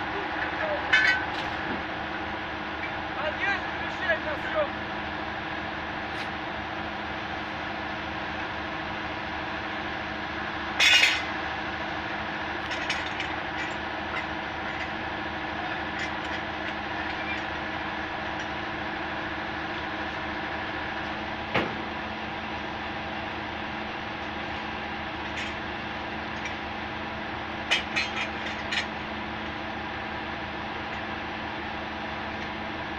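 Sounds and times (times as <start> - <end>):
heavy diesel machinery running: 0.0 - 32.9
loud metallic clank: 0.9 - 1.8, 10.8 - 11.3.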